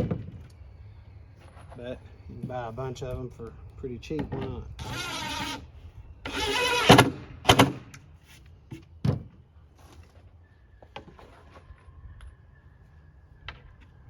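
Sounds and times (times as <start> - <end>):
cordless drill whirring: 4.8 - 5.6, 6.3 - 7.1.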